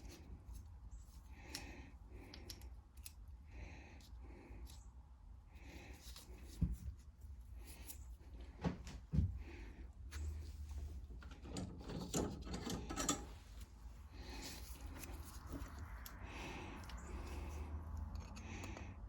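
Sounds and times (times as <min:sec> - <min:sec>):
small parts clicking: 0:01.4 - 0:03.2, 0:14.5 - 0:18.9.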